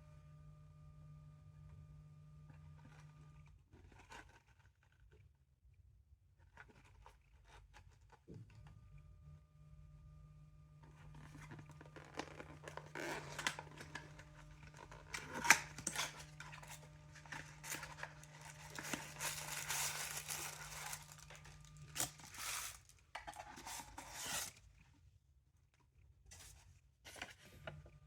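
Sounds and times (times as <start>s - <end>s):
packaging crinkling and tearing: 11.2s - 24.6s.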